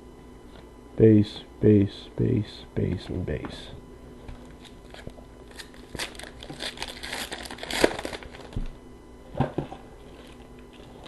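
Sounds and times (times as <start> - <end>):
foil wrapper tearing and crinkling: 4.5 - 8.7.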